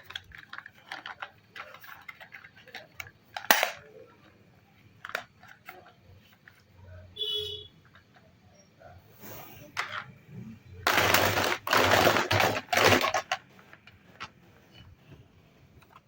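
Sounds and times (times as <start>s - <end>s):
plastic toy guns clicking: 0.0s - 4.0s, 10.9s - 14.0s.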